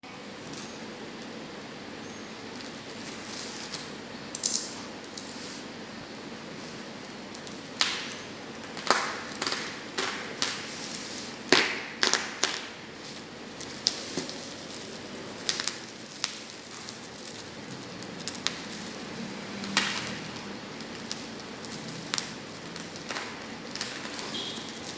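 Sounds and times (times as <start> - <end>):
steady background hiss: 0.1 - 24.9
packaging rustling and clicking: 6.8 - 24.9.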